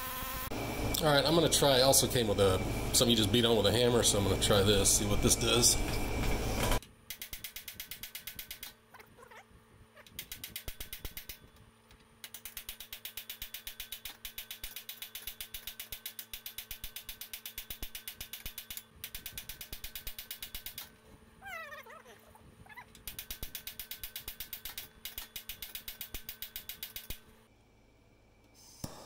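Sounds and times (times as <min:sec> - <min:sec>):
pneumatic air hammer blows: 0:12.3 - 0:20.9, 0:23.0 - 0:27.2.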